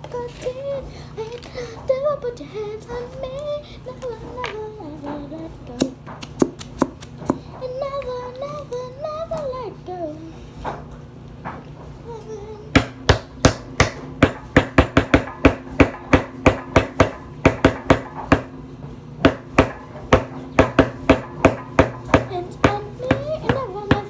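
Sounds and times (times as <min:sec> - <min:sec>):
faint low hum: 0:00.0 - 0:24.0
utensil knocking a bowl: 0:12.8 - 0:18.6, 0:19.2 - 0:24.0.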